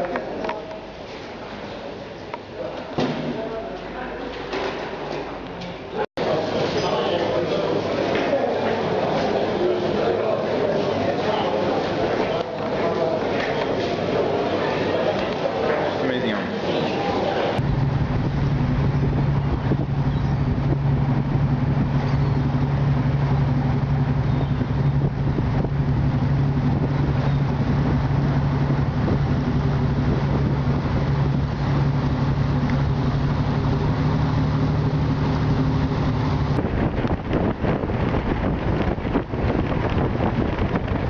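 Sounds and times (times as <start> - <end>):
engine humming steadily: 17.5 - 41.0.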